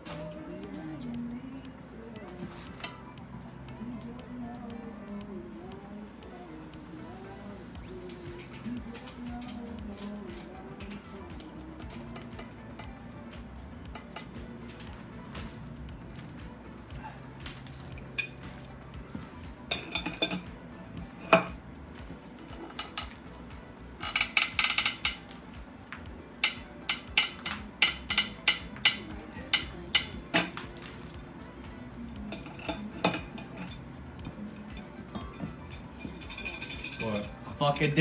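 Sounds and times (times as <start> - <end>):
metal tools clinking on engine parts: 17.5 - 20.5, 22.4 - 23.3, 26.4 - 31.1, 34.5 - 38.0.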